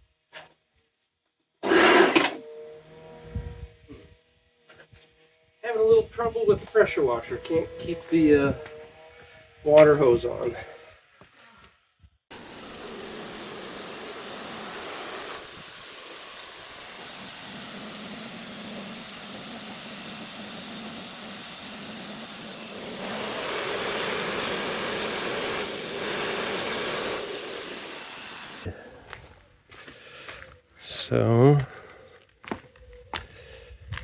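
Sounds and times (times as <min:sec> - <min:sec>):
pressure washer spraying: 0:01.6 - 0:02.4, 0:12.3 - 0:28.7.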